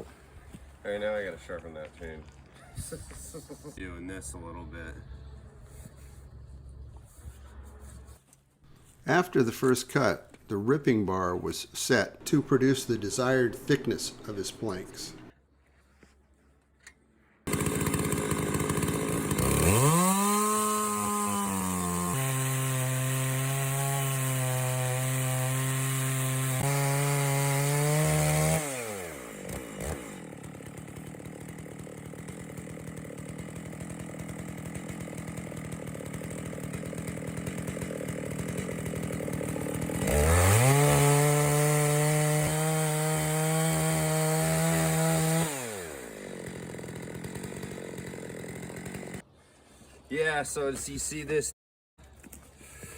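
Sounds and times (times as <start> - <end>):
chainsaw cutting log: 17.5 - 49.3.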